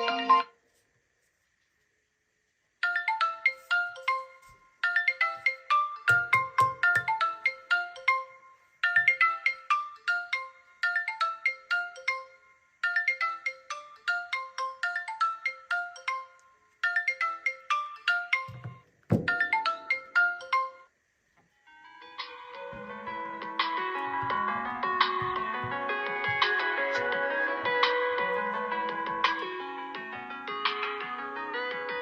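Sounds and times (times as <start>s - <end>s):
marimba-like ringtone melody: 2.8s - 20.9s.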